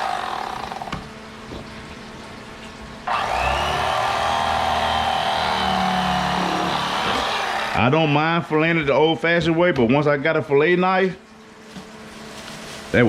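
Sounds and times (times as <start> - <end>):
electric knife motor whining: 0.0 - 1.0, 3.1 - 7.9.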